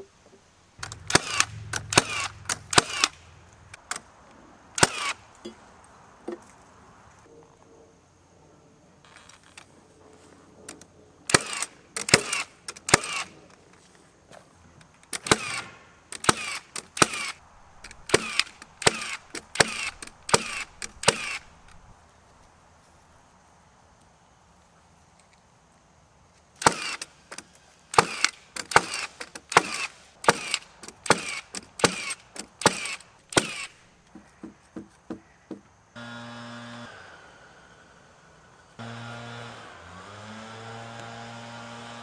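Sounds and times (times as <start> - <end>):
steady low hum: 0.8 - 3.9
hammer driving nails into wood: 15.1 - 21.5, 28.0 - 35.7.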